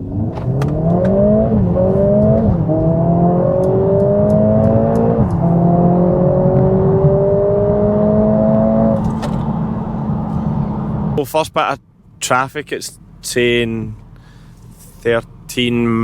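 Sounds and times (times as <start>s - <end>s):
car engine accelerating: 0.0s - 11.4s.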